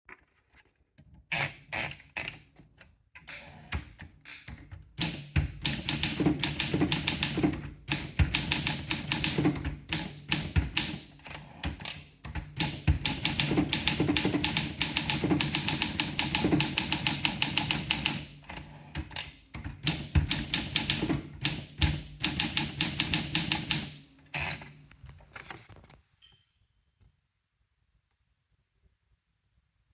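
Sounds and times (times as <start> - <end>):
typewriter keys clacking: 5.0 - 23.9.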